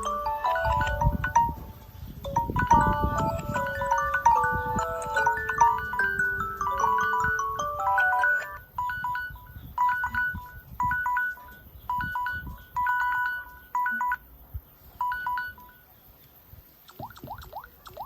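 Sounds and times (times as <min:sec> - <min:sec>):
chiming phone ringtone: 0:00.0 - 0:14.2, 0:15.0 - 0:15.8
high electronic beeps: 0:02.6 - 0:14.2, 0:15.0 - 0:15.8, 0:16.9 - 0:18.0.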